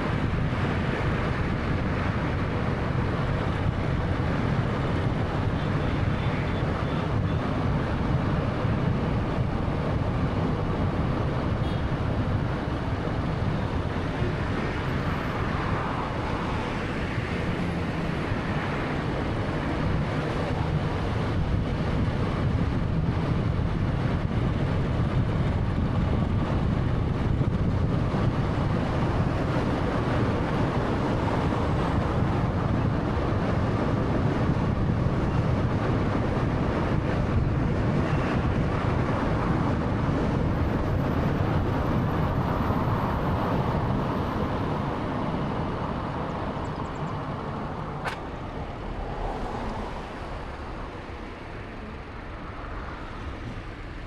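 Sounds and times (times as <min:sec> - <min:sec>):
car road and engine noise: 0:00.0 - 0:54.0
sharp click: 0:48.0 - 0:48.3.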